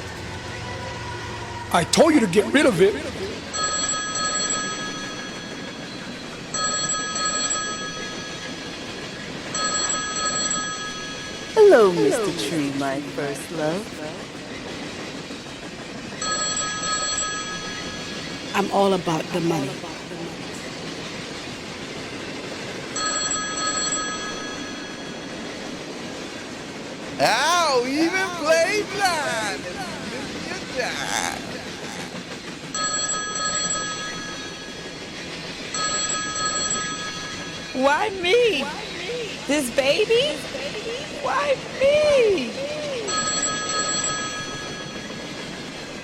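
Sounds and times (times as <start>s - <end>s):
telephone bell ringing: 3.5s - 8.6s, 9.5s - 12.2s, 16.2s - 18.2s, 23.0s - 25.4s, 32.8s - 34.9s, 35.7s - 37.8s, 43.1s - 45.4s.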